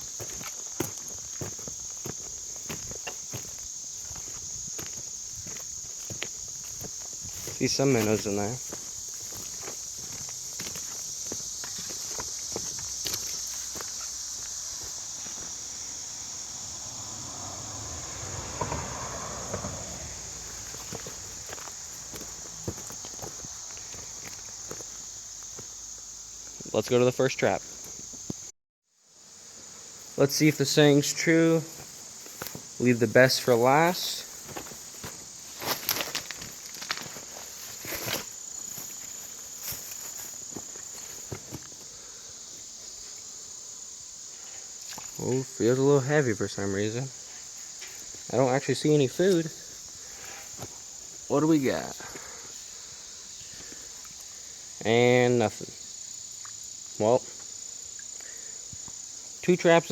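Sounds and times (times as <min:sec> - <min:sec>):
footsteps outdoors: 0:00.0 - 0:28.5, 0:29.4 - 0:59.9
high insect drone: 0:00.0 - 0:59.9
rustling: 0:34.2 - 0:41.9.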